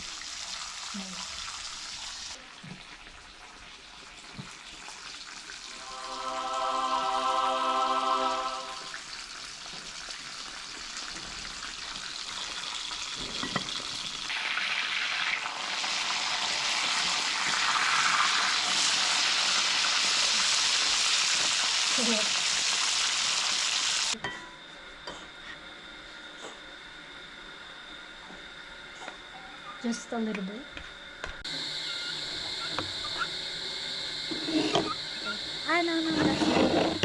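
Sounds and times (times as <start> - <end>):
fish frying in hot oil: 0.0 - 5.8, 9.0 - 24.2, 31.5 - 37.0.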